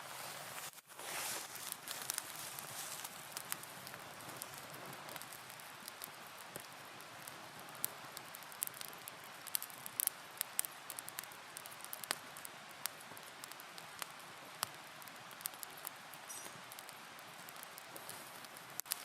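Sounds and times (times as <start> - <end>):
campfire crackling: 0.0 - 19.0.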